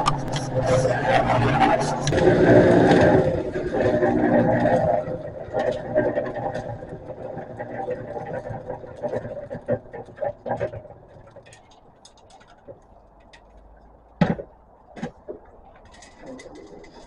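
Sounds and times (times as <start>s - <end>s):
concrete mixer running: 0.0s - 11.3s.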